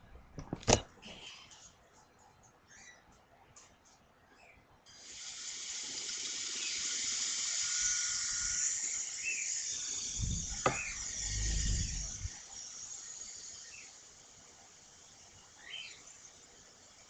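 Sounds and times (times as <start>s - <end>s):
toy helicopter rotors whirring: 5.0s - 17.0s
low rumbling: 10.2s - 12.4s.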